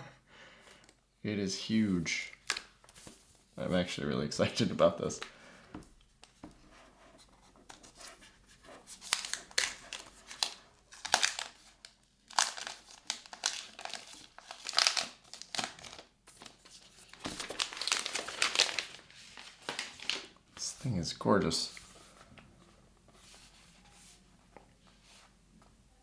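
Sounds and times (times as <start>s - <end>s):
packaging crinkling: 2.3s - 3.2s, 7.8s - 20.4s.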